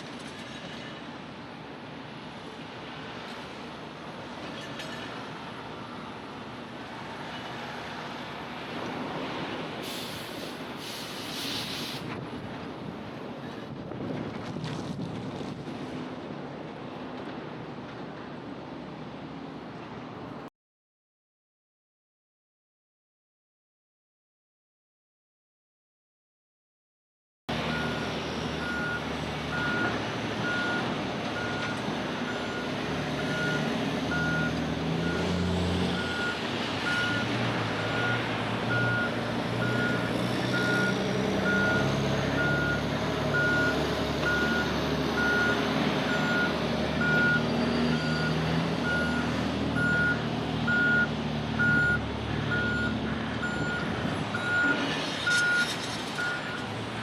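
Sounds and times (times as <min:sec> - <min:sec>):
diesel engine rumble: 0:27.5 - 0:57.0
reversing alarm beeping: 0:27.7 - 0:30.8, 0:31.4 - 0:35.3, 0:36.0 - 0:40.9, 0:41.5 - 0:49.2, 0:49.8 - 0:56.6.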